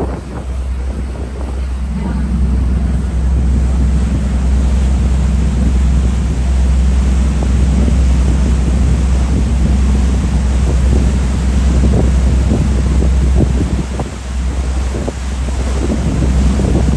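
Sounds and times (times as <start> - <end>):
vehicle engine drone: 0.0 - 16.9
wind noise on microphone: 0.0 - 16.9.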